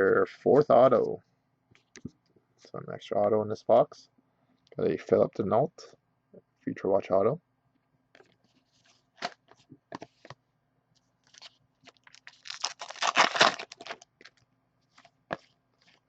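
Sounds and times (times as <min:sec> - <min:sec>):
plastic wrapper crinkling: 0:11.2 - 0:16.0.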